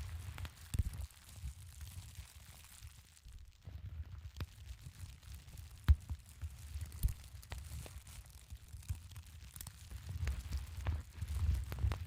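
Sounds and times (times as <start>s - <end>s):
campfire crackling: 0.0s - 12.0s
campfire low rumble: 0.0s - 12.0s.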